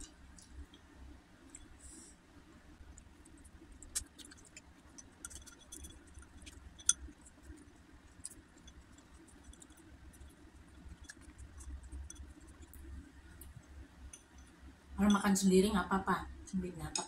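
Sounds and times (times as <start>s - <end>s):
chopsticks clicking against a dish: 4.0s - 14.5s.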